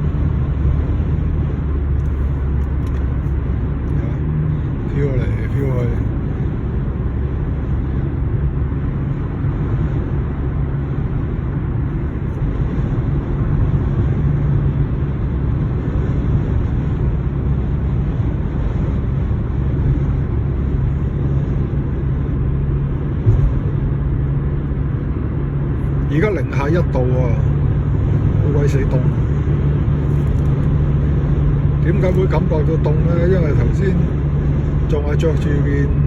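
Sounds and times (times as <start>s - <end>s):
car cabin road and wind noise: 0.0s - 36.0s
brief knock: 23.2s - 23.7s.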